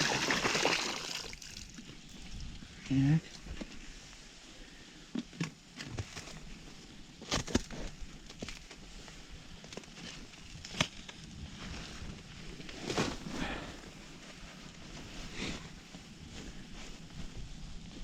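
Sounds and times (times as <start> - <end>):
gear knocking and crunching in snow: 5.6 - 18.0.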